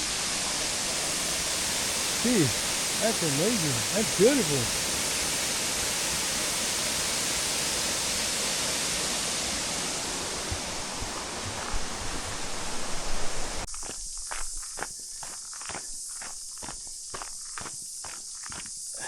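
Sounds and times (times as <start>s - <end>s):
waterfall rushing: 0.0s - 13.6s.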